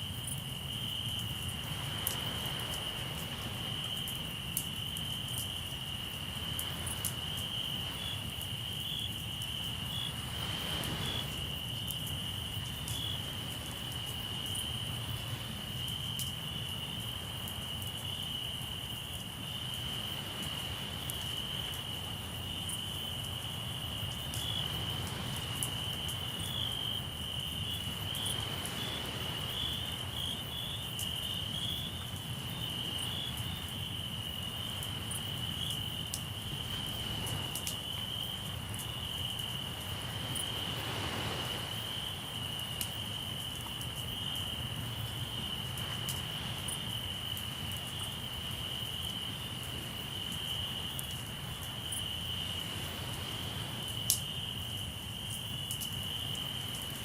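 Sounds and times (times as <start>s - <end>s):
crickets chirring: 0.0s - 57.0s
sea waves washing: 9.7s - 11.6s, 27.8s - 30.5s, 36.5s - 38.8s, 39.6s - 42.4s, 52.4s - 53.8s.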